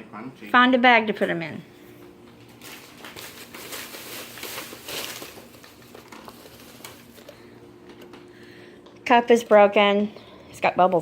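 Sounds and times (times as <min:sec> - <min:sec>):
plastic bag crinkling: 0:02.4 - 0:07.6.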